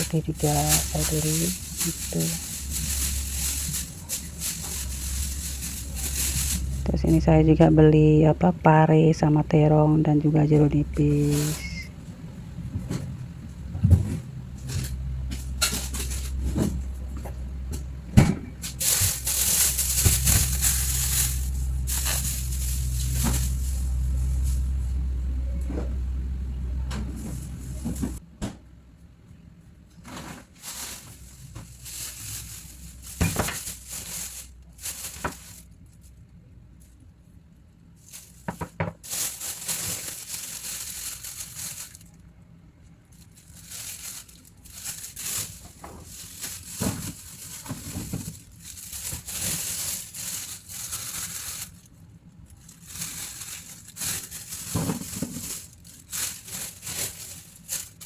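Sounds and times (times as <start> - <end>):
plastic bags rustling: 0.0 - 28.2, 30.0 - 36.2, 37.9 - 58.0
low steady hum: 0.0 - 58.0
knocks of groceries handled: 13.8 - 24.4, 30.0 - 35.6, 38.3 - 42.0, 43.5 - 50.1, 53.4 - 58.0.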